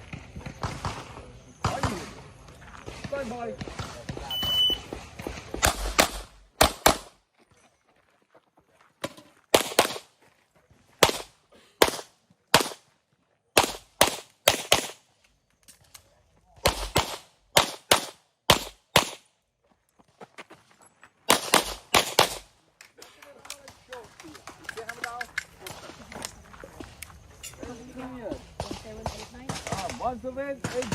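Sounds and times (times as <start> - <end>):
handgun shots: 5.6 - 7.1, 11.0 - 12.8, 13.6 - 15.0, 16.6 - 19.2, 21.3 - 22.5.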